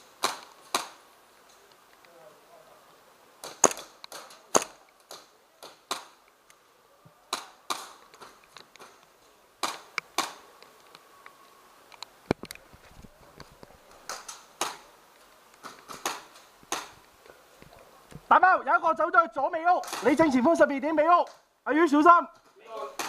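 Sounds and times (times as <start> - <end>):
airsoft pistol shots: 3.4 - 4.8.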